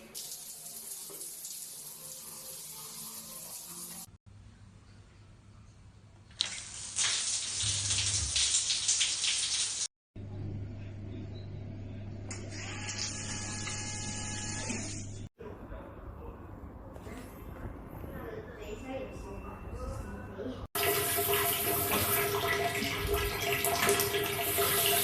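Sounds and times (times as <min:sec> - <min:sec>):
water running from a tap: 0:00.0 - 0:04.1, 0:06.4 - 0:09.9, 0:20.8 - 0:25.0.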